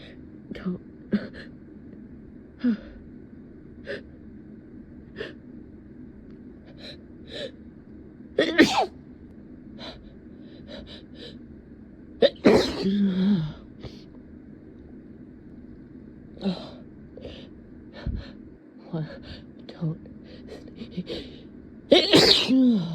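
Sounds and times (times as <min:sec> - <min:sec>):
person sneezing: 0:12.2 - 0:13.0, 0:21.9 - 0:22.8.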